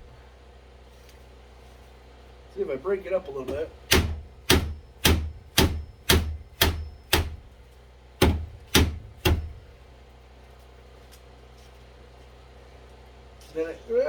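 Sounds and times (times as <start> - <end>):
ice container being banged: 3.5 - 7.5, 8.2 - 9.7.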